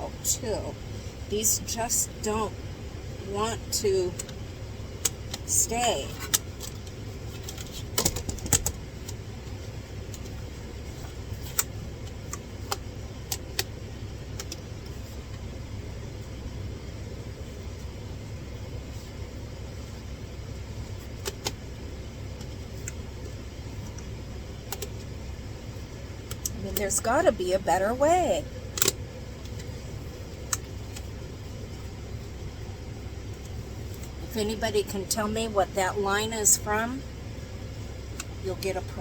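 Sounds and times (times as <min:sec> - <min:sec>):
steady low hum: 0:00.0 - 0:39.0
hard plastic parts clicking: 0:06.2 - 0:08.8.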